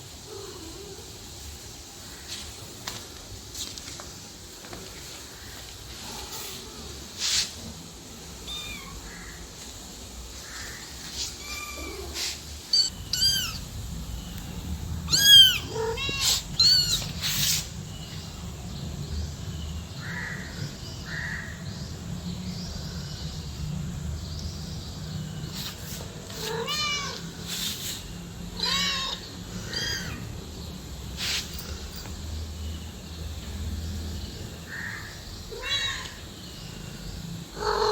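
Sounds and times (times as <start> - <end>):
cat and kitten meowing: 8.4 - 9.1, 11.2 - 13.7, 15.1 - 17.4, 26.3 - 27.3, 28.6 - 30.3, 35.5 - 36.2
low steady rumble: 12.9 - 16.9.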